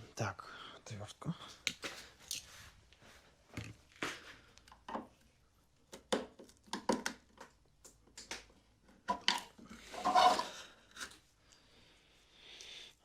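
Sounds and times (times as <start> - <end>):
scraping clatter: 9.9 - 10.5.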